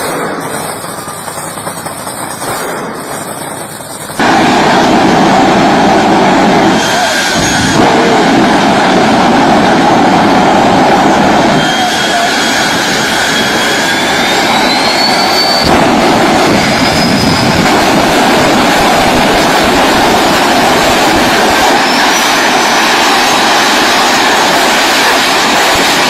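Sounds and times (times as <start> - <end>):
car engine and exhaust roaring: 0.0 - 26.0
high whine: 0.0 - 26.0.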